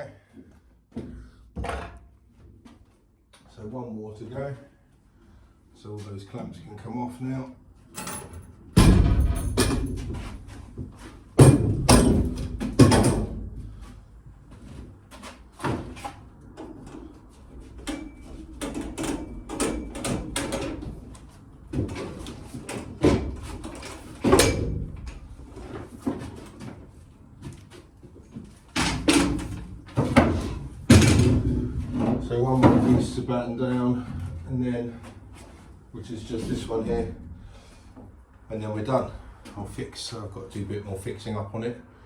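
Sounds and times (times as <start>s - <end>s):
knocks and clunks of wood: 8.8s - 16.2s, 18.2s - 33.2s.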